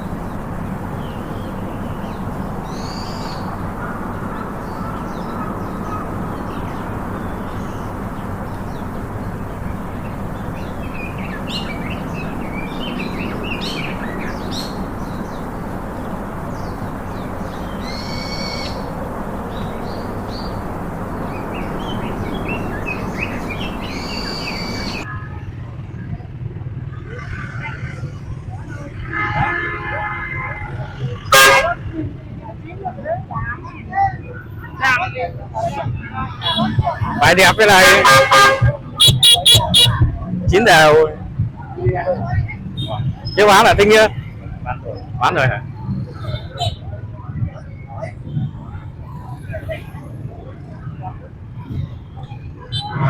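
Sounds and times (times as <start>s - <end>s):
birds chirping: 0.0s - 25.1s, 35.8s - 41.4s, 42.0s - 46.9s
busy outdoor background noise: 0.0s - 53.0s
long drawn-out calls: 16.6s - 19.0s, 37.5s - 40.0s.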